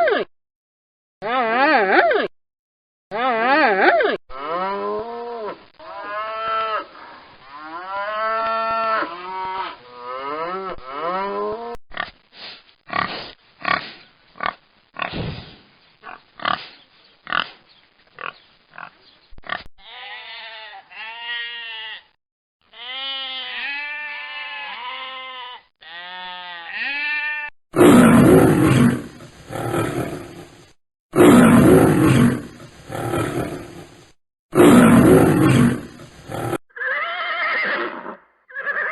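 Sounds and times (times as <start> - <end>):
loud animal roars: 27.8 - 30.6, 31.2 - 36.6.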